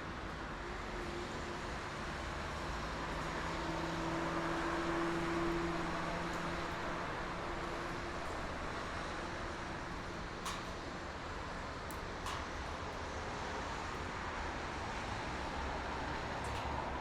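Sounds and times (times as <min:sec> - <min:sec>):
highway traffic rushing: 0:02.4 - 0:17.0
passing vehicle engine hum: 0:03.4 - 0:09.8.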